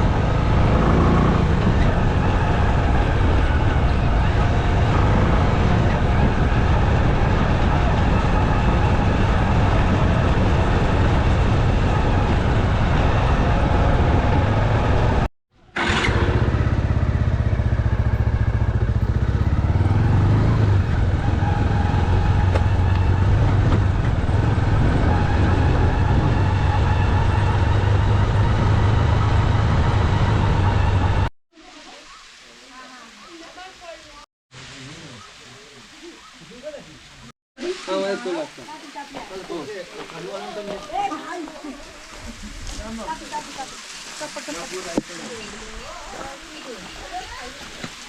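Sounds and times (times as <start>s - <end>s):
wind rush: 0.0s - 15.3s, 18.5s - 31.3s
motorcycle engine running: 0.0s - 31.3s.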